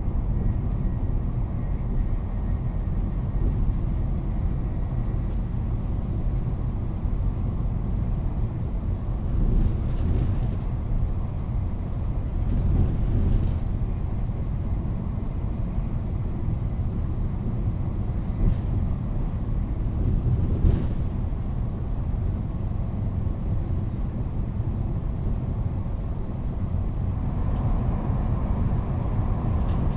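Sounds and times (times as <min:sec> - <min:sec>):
train rumble: 0:00.0 - 0:29.9
rattles and clatters: 0:08.5 - 0:11.2, 0:12.2 - 0:14.4, 0:19.9 - 0:21.3, 0:29.4 - 0:29.9.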